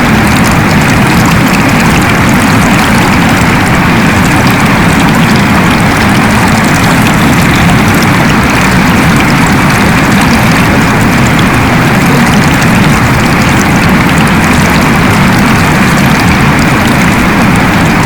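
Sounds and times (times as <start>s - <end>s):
deep rumble: 0.0s - 18.0s
waterfall pouring: 0.0s - 18.0s.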